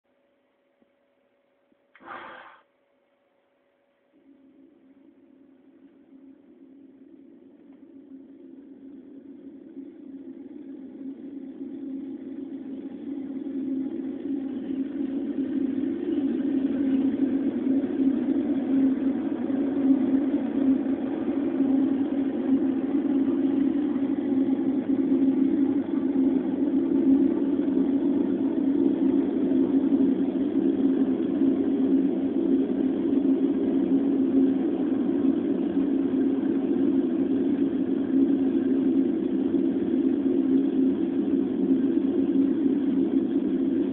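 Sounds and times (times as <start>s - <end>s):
low droning rumble: 4.3s - 43.9s.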